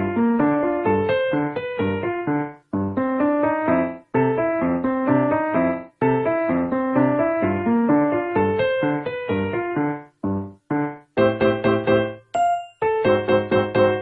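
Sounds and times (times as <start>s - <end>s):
piano-like keyboard tune: 0.0s - 14.0s.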